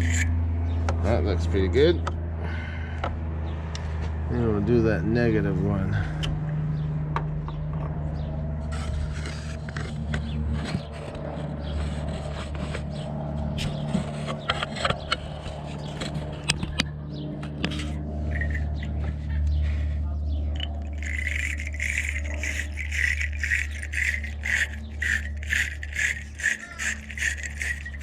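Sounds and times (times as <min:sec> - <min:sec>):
wire brush scraping battery clamp: 0:00.0 - 0:00.3, 0:08.7 - 0:13.0, 0:17.6 - 0:19.0, 0:20.6 - 0:28.0
steady low hum: 0:00.0 - 0:28.0.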